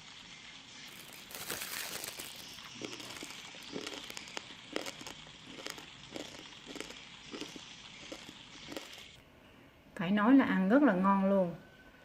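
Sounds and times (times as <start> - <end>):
crispy pork skin crunching: 0.9 - 9.1.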